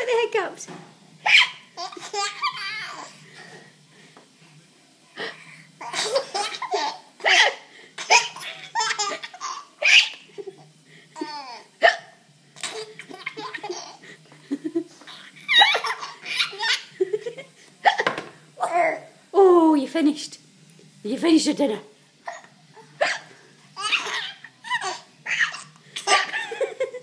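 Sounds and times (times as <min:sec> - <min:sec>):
baby giggling: 0:15.1 - 0:16.9, 0:22.3 - 0:27.0.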